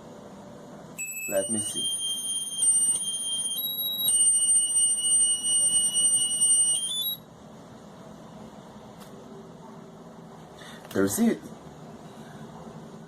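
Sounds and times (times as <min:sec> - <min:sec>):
high electronic alarm tone: 0:01.0 - 0:07.2.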